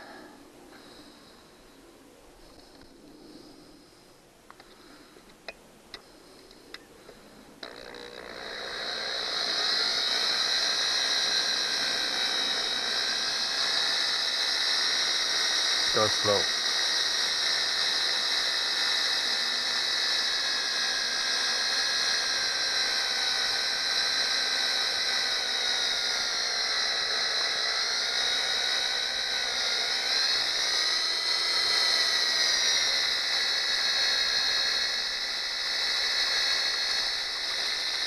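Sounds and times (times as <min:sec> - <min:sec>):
electric drill whining: 0:05.9 - 0:38.0.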